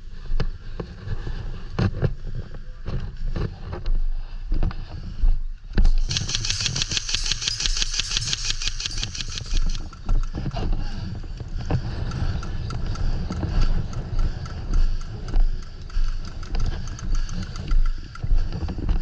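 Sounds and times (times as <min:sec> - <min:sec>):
rapid fine clicks: 0:05.8 - 0:10.0
wind rumble on microphone: 0:09.7 - 0:19.0.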